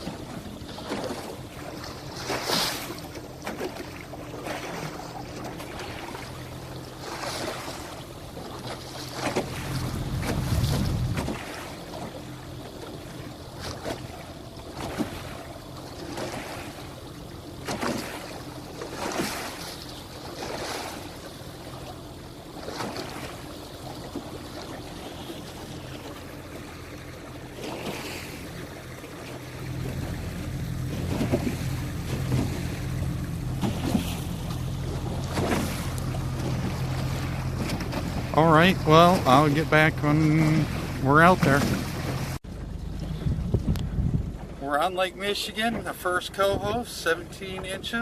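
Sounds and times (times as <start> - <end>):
boat engine running: 0.0 - 48.0
hull slapping through waves: 0.0 - 48.0
wind on microphone: 9.8 - 11.5, 40.6 - 44.6.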